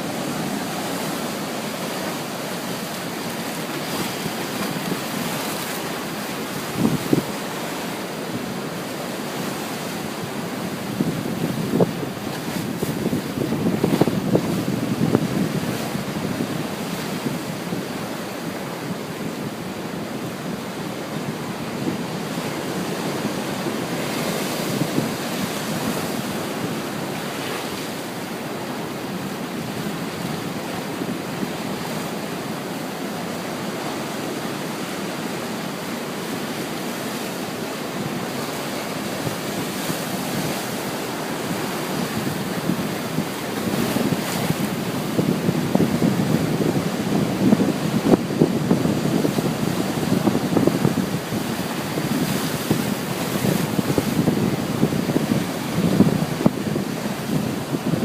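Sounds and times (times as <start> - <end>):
wind buffeting microphone: 0.0 - 7.6, 10.1 - 27.5, 39.1 - 58.0
waves breaking on beach: 0.0 - 58.0.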